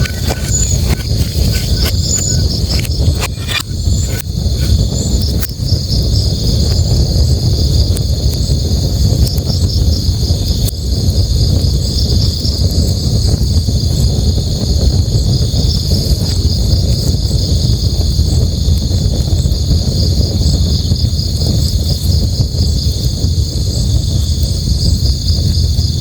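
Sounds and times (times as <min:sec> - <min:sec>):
campfire crackling: 0:00.0 - 0:13.4
crickets chirping: 0:00.0 - 0:26.0.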